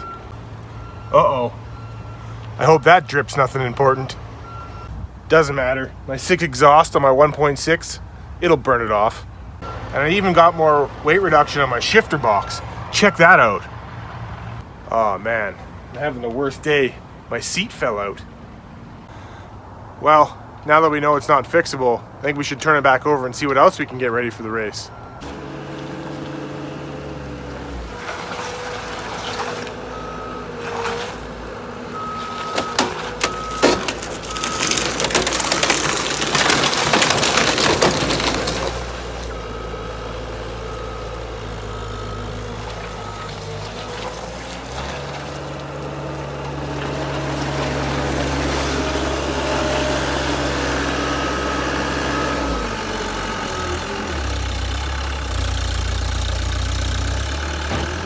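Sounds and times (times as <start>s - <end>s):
metal crunching and scraping: 25.0s - 58.0s
skid steer engine running: 25.2s - 58.0s.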